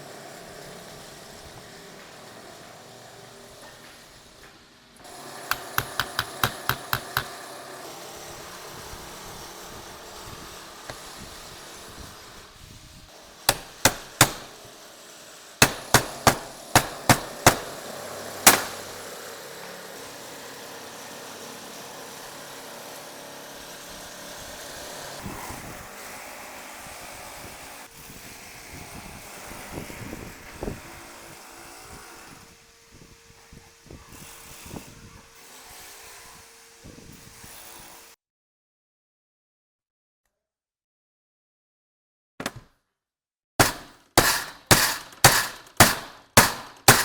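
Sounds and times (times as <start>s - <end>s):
hammer strikes: 5.5s - 7.4s, 13.5s - 14.8s, 15.6s - 19.0s, 43.6s - 47.0s.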